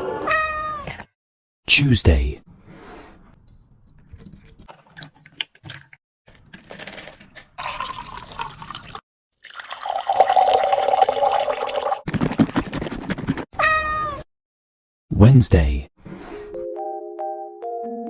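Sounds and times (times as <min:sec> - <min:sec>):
water pouring: 0:04.0 - 0:06.0, 0:06.8 - 0:12.0.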